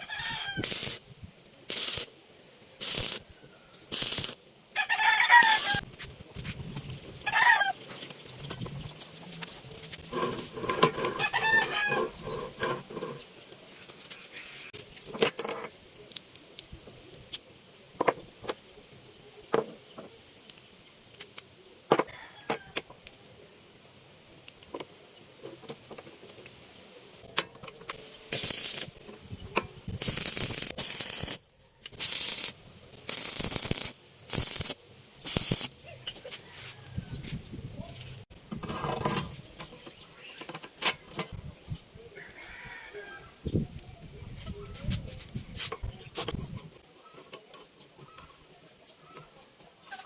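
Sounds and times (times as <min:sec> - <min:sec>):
loud hissing bursts: 0:00.0 - 0:04.6, 0:05.3 - 0:07.9, 0:27.9 - 0:35.9
metallic clicks of parts handled: 0:14.8 - 0:18.6, 0:20.4 - 0:21.5.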